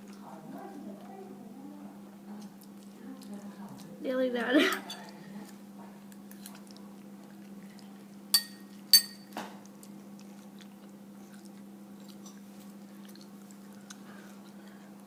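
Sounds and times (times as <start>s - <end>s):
cutlery clinking against dish: 8.4s - 9.5s.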